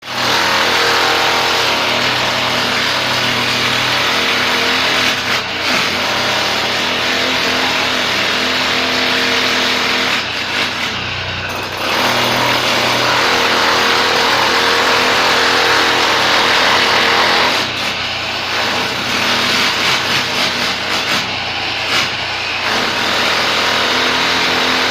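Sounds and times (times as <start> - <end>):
engine running loudly: 11.7 - 24.9.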